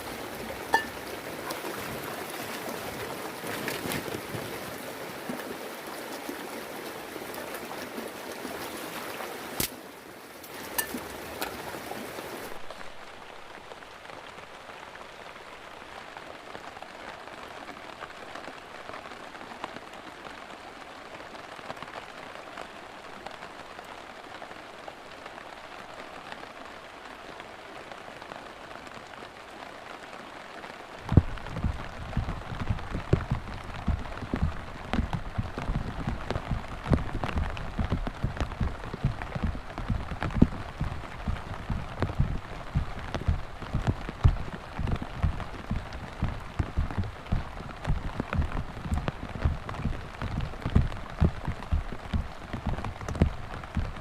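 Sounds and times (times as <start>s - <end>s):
heavy rain hissing: 0.0s - 3.4s, 30.8s - 54.0s.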